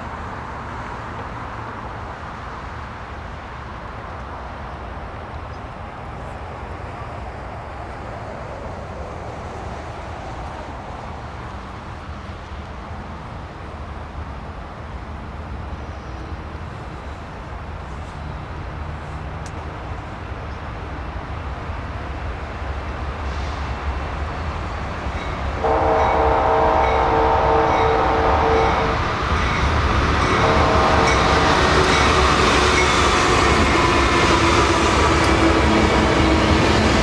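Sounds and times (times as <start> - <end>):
locomotive rumble: 22.8 - 37.0
locomotive air horn chord: 25.5 - 37.0.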